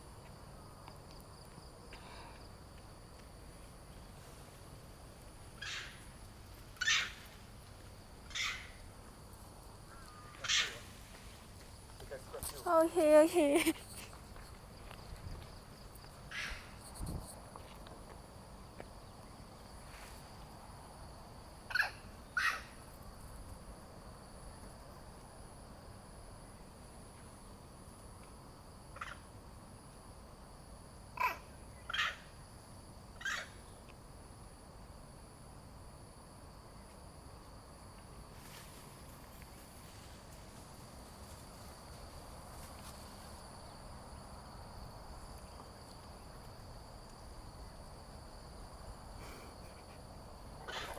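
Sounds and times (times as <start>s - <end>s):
high insect drone: 0.0s - 50.9s
monkeys giving sharp calls: 10.4s - 10.8s.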